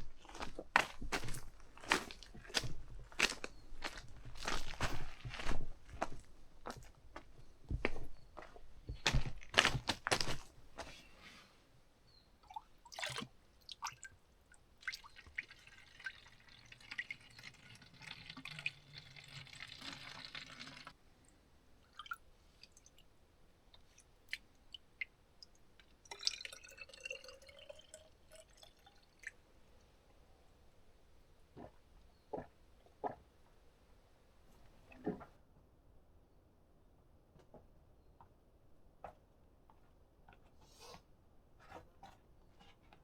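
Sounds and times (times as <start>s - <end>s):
liquid pouring and splashing: 12.4s - 14.2s, 14.8s - 21.0s, 25.4s - 29.4s.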